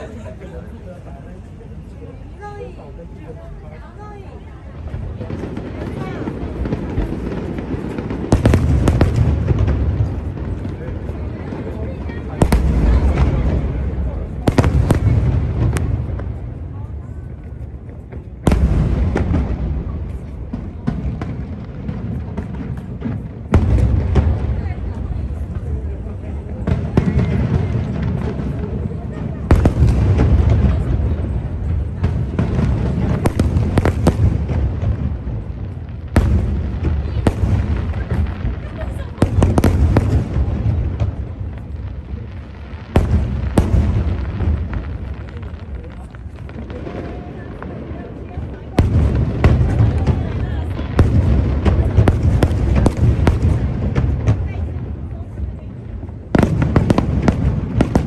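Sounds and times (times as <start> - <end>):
firework cracks: 4.1 - 58.0.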